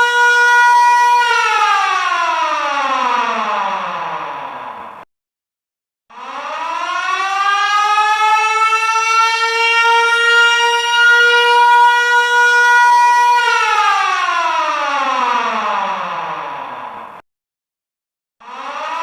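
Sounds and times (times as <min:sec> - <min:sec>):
alarm siren wailing: 0:00.0 - 0:05.0, 0:06.1 - 0:17.2, 0:18.4 - 0:19.0.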